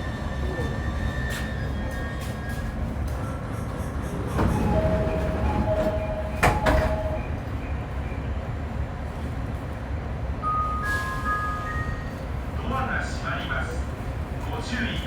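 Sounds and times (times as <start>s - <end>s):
train interior rumble: 0.0s - 15.0s.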